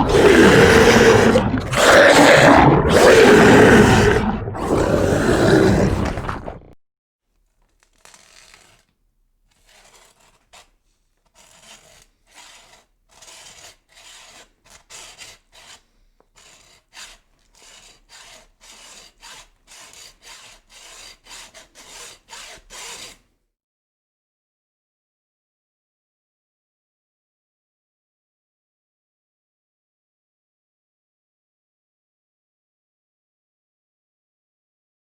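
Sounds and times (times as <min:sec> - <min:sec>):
rasping scraping strokes: 0:00.0 - 0:06.7, 0:07.5 - 0:23.3.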